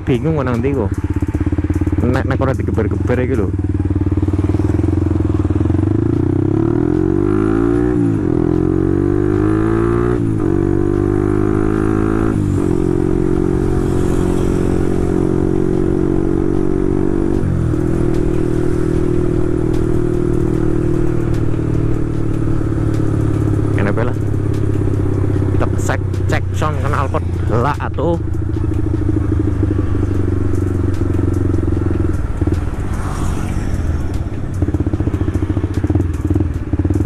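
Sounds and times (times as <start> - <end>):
motorcycle engine accelerating: 0.0 - 37.0.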